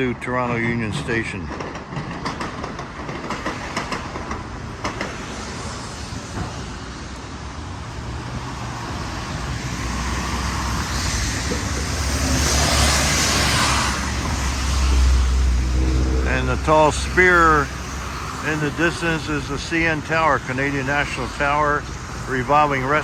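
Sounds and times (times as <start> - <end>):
traffic noise: 0.0 - 23.0
vehicle approaching: 2.2 - 23.0.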